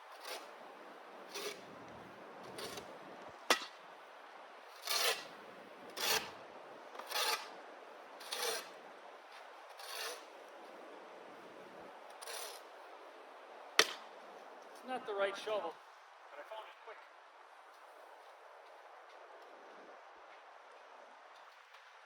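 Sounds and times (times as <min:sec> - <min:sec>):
shovel scraping snow: 0:00.0 - 0:03.8, 0:04.7 - 0:06.4, 0:07.0 - 0:07.6, 0:08.2 - 0:10.4, 0:12.1 - 0:12.7.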